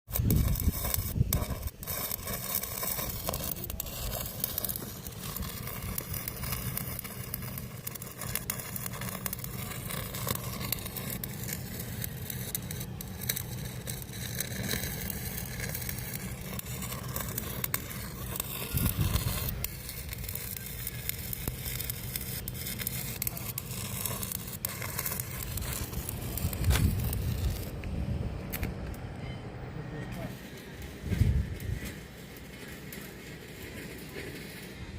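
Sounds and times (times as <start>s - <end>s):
welding arc crackling: 0.1s - 29.0s, 30.1s - 34.9s.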